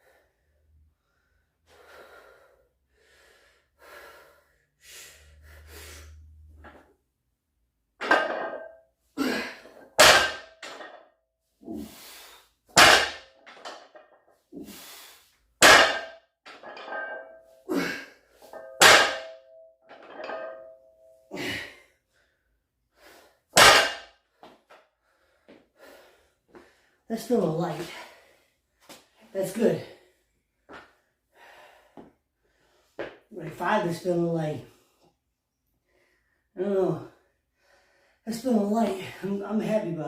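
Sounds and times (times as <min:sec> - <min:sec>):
hard breathing: 0:00.0 - 0:06.7, 0:11.6 - 0:13.5, 0:24.3 - 0:27.1
barbell plates clanging on floor: 0:08.0 - 0:08.8, 0:09.9 - 0:11.0, 0:12.8 - 0:14.0, 0:15.6 - 0:17.5, 0:18.4 - 0:20.8, 0:23.6 - 0:24.1.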